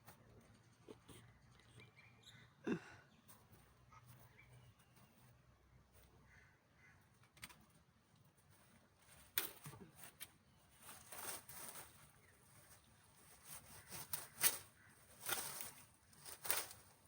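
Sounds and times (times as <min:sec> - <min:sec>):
brief rustle: 0:13.4 - 0:16.9.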